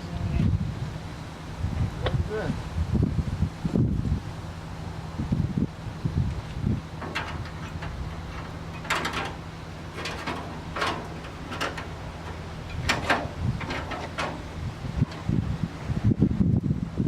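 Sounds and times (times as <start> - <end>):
steady low hum: 0.0 - 17.0
sheet metal scraping: 7.0 - 15.5.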